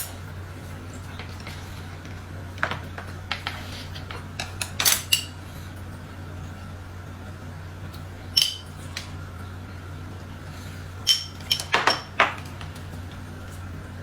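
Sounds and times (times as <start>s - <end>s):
steady low hum: 0.0s - 14.0s
dishes and utensils clinking: 8.4s - 9.1s, 11.0s - 12.8s.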